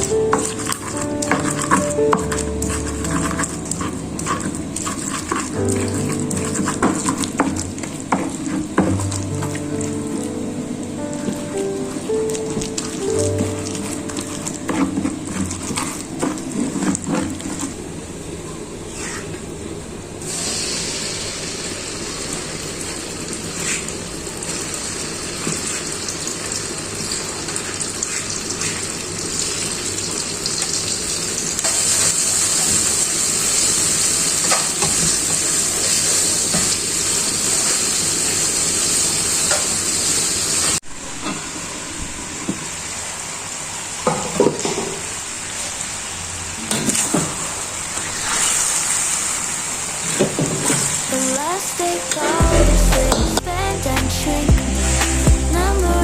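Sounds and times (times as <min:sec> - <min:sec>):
food sizzling in a hot pan: 0:20.3 - 0:40.8.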